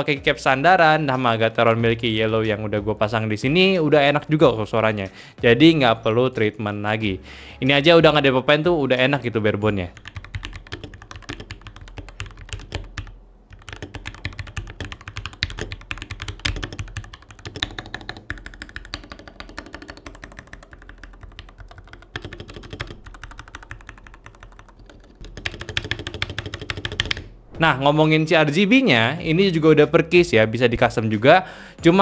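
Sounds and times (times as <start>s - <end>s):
mechanical keyboard typing: 9.7s - 27.3s.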